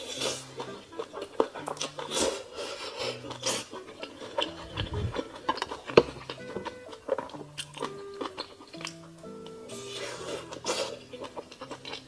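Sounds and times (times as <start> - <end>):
soft background music: 0.0 - 12.0.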